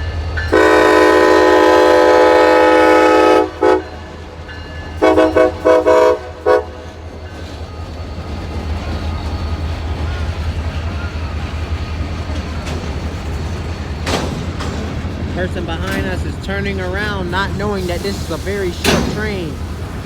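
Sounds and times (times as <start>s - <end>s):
low rumble of train: 0.0s - 20.0s
locomotive horn blasts and toots: 0.5s - 4.0s, 5.0s - 7.0s.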